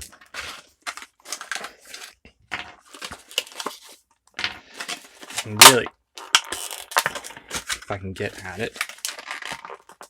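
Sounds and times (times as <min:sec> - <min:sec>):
packaging crinkling: 0:00.0 - 0:02.2, 0:04.7 - 0:10.0.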